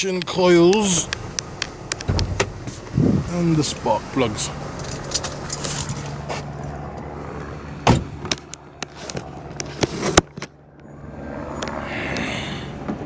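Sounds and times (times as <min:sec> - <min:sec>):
car engine idling with misfire: 0:00.0 - 0:10.7
sharp knocks and clatters: 0:00.2 - 0:03.8.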